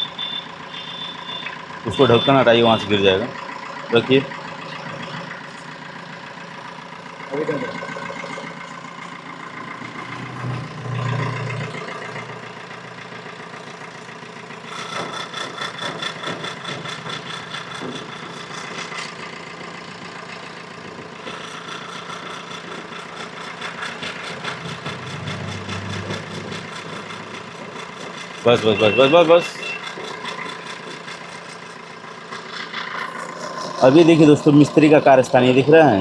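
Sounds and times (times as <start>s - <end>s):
car engine idling: 0.0s - 36.0s
fast rattling tick: 11.8s - 36.0s.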